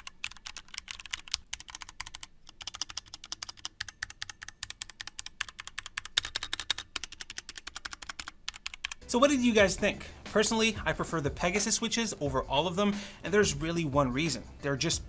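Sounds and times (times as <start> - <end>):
fast typing on keyboard: 0.0 - 9.0.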